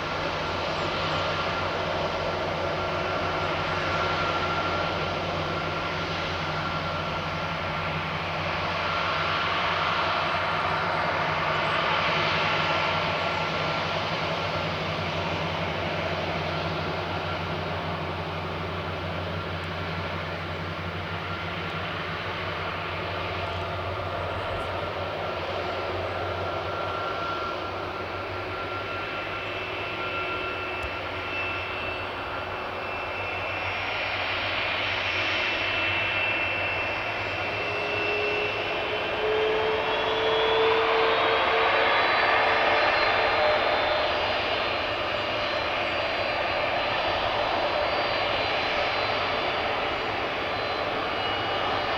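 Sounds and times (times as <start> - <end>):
jet engines whining: 0.0 - 51.9.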